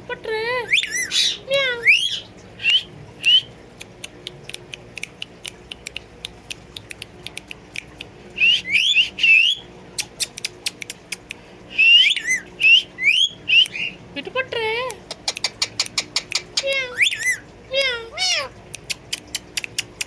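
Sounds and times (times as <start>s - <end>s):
parrot whistled calls: 0.6s - 3.6s, 8.4s - 10.3s, 11.7s - 14.0s, 16.6s - 18.5s.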